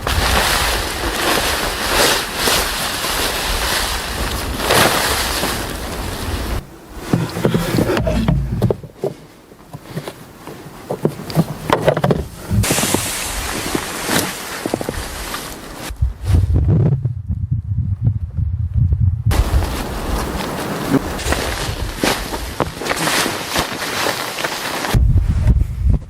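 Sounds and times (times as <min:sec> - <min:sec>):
gusting snowstorm wind: 0:00.0 - 0:08.9, 0:12.2 - 0:26.0
scattered crackles: 0:00.0 - 0:08.9, 0:19.3 - 0:25.0
low rumble: 0:07.1 - 0:08.8, 0:15.9 - 0:19.7.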